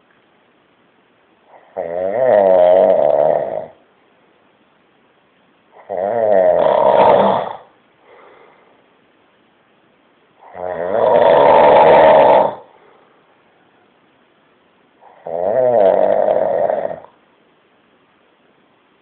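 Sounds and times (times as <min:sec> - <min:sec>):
man snoring: 0:01.5 - 0:03.8, 0:05.8 - 0:07.7, 0:10.4 - 0:12.7, 0:15.0 - 0:17.1
faint breath out: 0:08.0 - 0:08.9.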